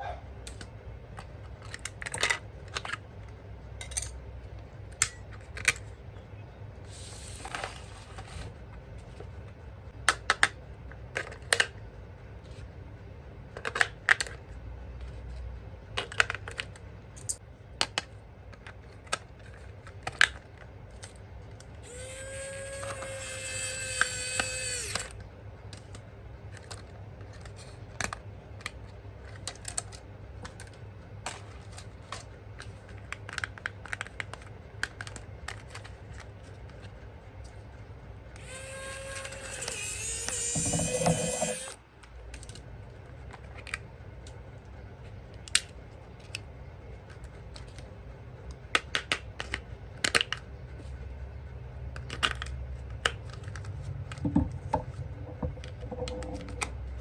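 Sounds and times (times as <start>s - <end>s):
small electric motor whining: 6.9s - 8.0s, 21.8s - 25.2s, 38.4s - 41.8s
small parts clicking: 21.8s - 25.2s, 38.4s - 42.6s.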